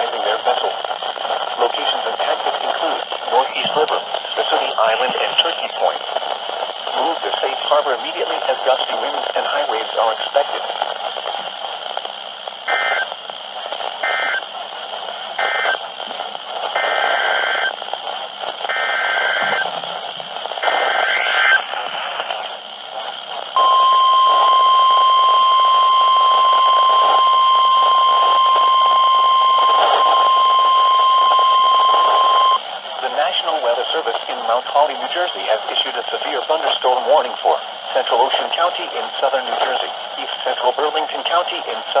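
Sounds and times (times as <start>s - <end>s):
radio static hiss: 0.0s - 42.0s
buzzy digital data bursts: 10.9s - 32.6s
steady warning alarm tone: 15.4s - 15.8s, 18.7s - 20.0s, 23.6s - 32.6s.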